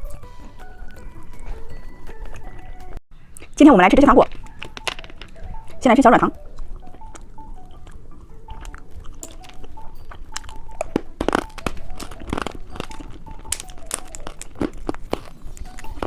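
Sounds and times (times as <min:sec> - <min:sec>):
plastic wrapper crinkling: 0:10.3 - 0:16.0.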